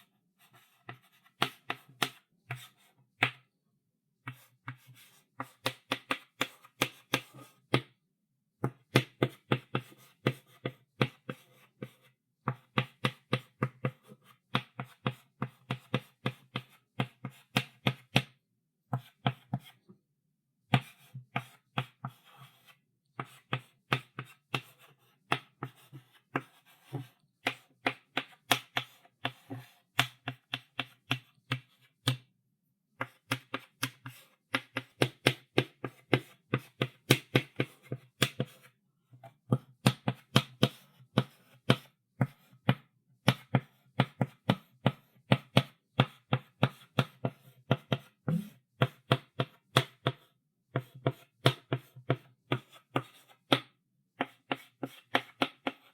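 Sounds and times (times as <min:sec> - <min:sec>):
chalk tapping on blackboard: 0:00.8 - 0:03.4, 0:04.3 - 0:07.9, 0:20.7 - 0:32.3, 0:33.0 - 0:55.9.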